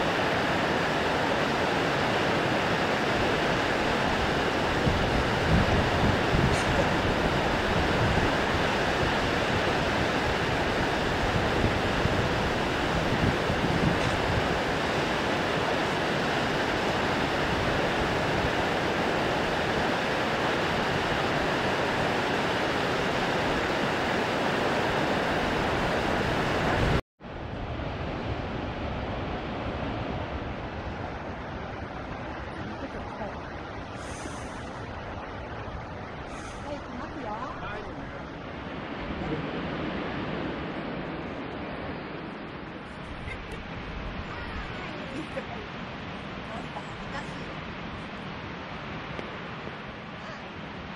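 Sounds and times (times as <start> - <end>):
waterfall rushing: 0.0 - 27.0.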